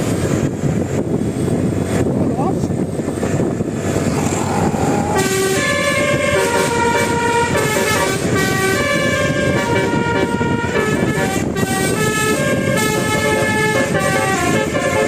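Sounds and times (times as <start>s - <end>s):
steady low rumble: 0.0s - 15.0s
multi-tone bus air horn melody: 4.4s - 15.0s.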